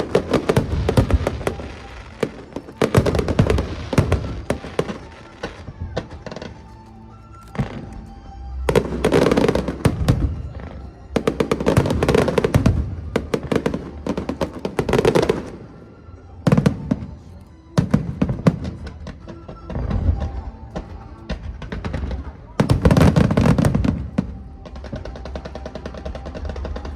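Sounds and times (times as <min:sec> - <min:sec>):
fireworks banging and crackling: 0:00.0 - 0:26.9
music playing: 0:00.0 - 0:26.9.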